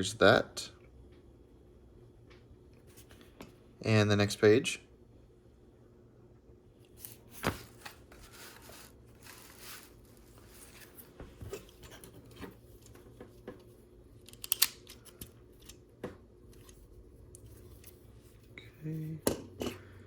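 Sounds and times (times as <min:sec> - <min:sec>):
soft rustle: 0:06.9 - 0:12.9.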